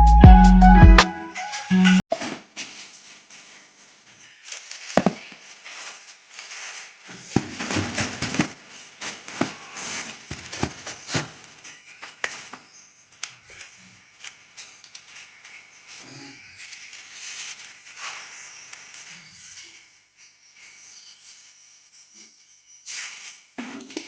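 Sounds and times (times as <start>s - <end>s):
packaging rustling and crinkling: 2.3s - 12.8s.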